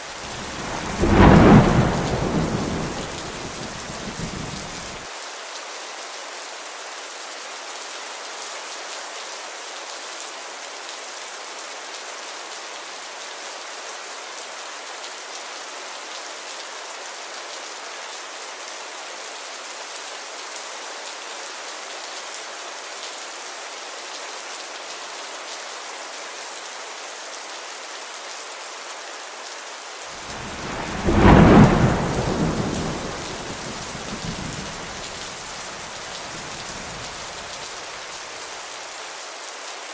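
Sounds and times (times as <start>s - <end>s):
steady rain hissing: 0.0s - 39.9s
thunder clap rumbling: 0.1s - 5.0s, 30.2s - 37.7s.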